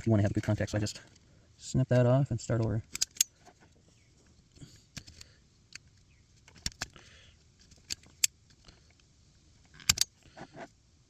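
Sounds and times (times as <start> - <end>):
wire stripper jaws clicking: 2.9 - 3.3, 9.8 - 10.1.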